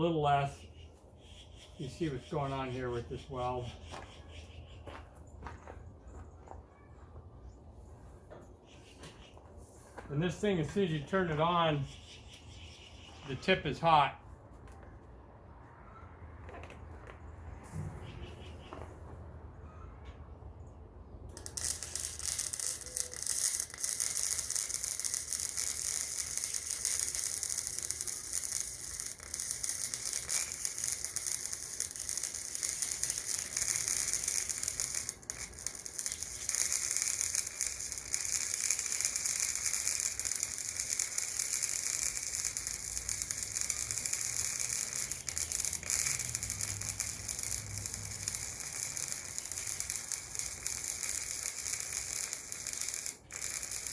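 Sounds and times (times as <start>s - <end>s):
welder arc crackling and sizzling: 21.4s - 53.9s.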